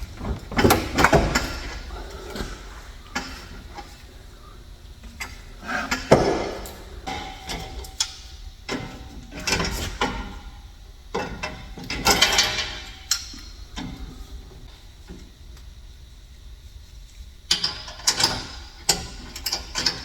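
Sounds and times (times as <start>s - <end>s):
metal knocks and clanks: 5.7s - 7.8s.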